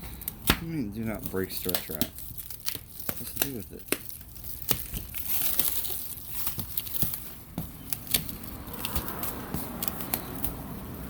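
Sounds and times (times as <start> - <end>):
plastic stretch wrap crinkling: 0.0 - 10.9.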